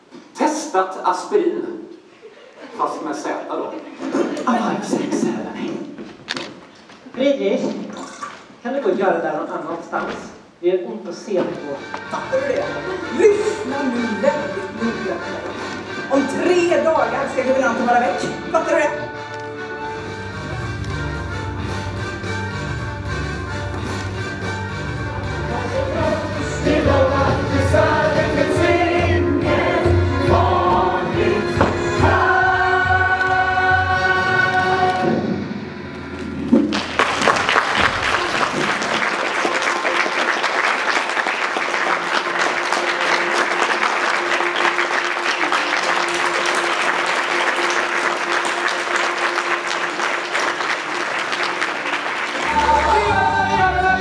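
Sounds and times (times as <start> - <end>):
group singing with band: 25.8 - 35.2
audience applause: 36.6 - 53.4.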